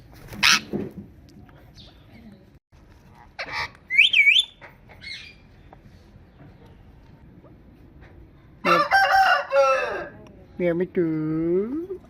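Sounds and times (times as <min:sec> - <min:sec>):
parrot whistling: 0:03.9 - 0:04.6.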